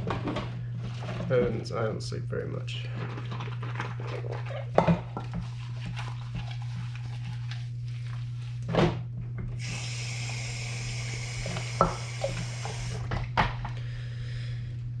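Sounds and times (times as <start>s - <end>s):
steady low hum: 0.0s - 15.0s
tap running into a sink: 11.2s - 13.5s.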